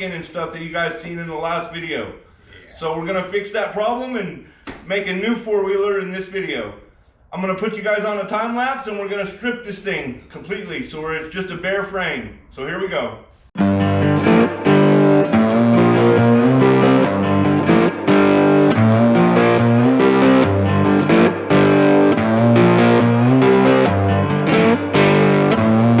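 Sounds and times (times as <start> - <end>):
distorted electric guitar: 13.6 - 26.0.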